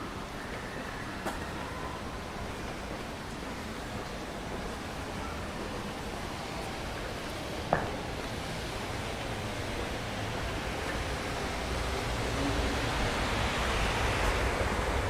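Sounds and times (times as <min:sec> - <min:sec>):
steady outdoor rushing noise: 0:00.0 - 0:15.0.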